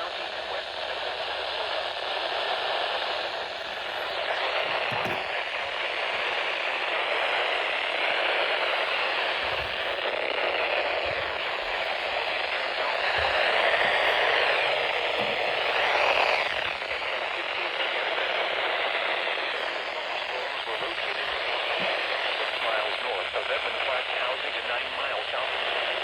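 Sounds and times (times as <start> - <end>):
radio static hiss: 0.0 - 26.0.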